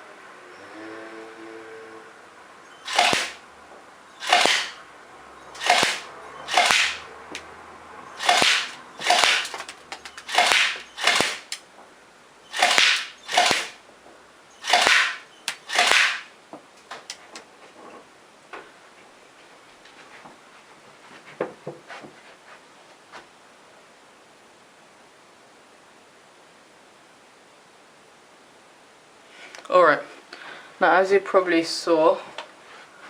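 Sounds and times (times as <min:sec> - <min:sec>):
airsoft pistol shots cracking: 0:02.9 - 0:03.4, 0:04.2 - 0:04.8, 0:05.6 - 0:07.0, 0:08.2 - 0:09.7, 0:10.3 - 0:11.6, 0:12.6 - 0:13.8, 0:14.6 - 0:16.3.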